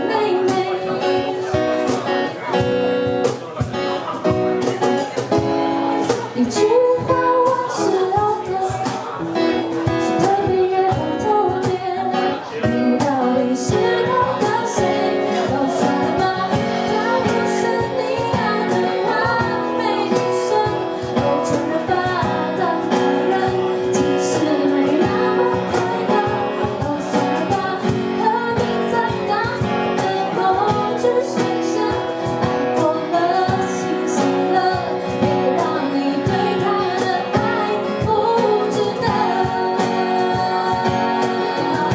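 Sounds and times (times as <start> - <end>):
woman singing: 0.0 - 2.1, 5.6 - 41.9
guitar: 0.0 - 41.9
steady drum beat: 0.4 - 12.1, 12.8 - 41.9.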